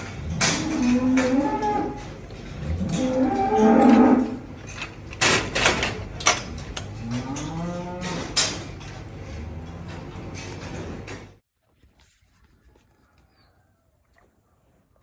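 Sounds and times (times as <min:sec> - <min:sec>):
cow mooing: 0:00.4 - 0:04.5, 0:06.9 - 0:08.4.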